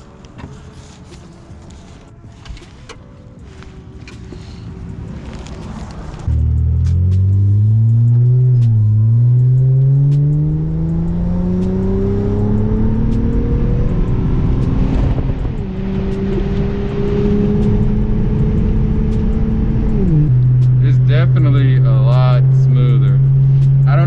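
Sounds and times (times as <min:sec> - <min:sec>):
car engine accelerating: 0:01.7 - 0:24.0.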